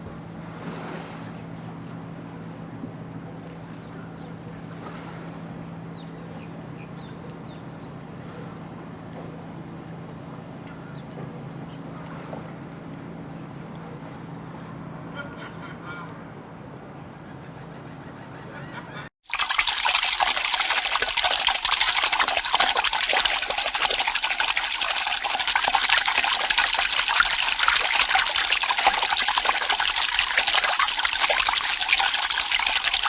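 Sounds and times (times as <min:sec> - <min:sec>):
water rushing and splashing: 0:19.2 - 0:33.0.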